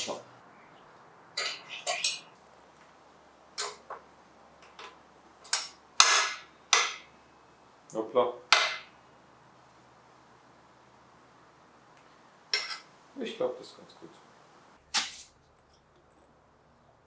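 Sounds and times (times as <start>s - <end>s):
metal tools clinking: 3.6s - 3.9s, 12.5s - 12.9s.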